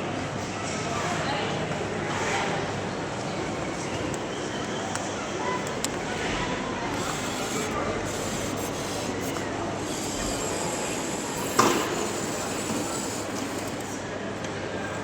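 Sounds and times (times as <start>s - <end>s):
coffee vending machine running: 5.6s - 14.2s.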